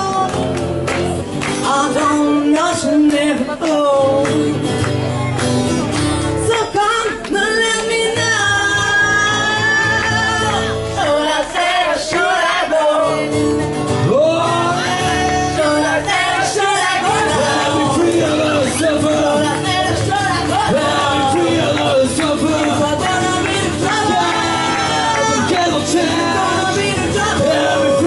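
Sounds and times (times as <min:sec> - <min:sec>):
acoustic guitar accompaniment: 0:00.0 - 0:28.0
person singing: 0:01.6 - 0:04.6, 0:14.0 - 0:28.0.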